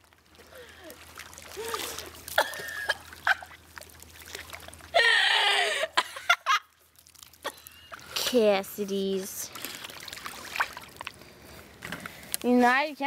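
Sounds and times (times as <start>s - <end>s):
liquid trickling and splashing: 0.0s - 13.0s
person gagging and retching: 1.6s - 3.6s, 7.2s - 8.1s.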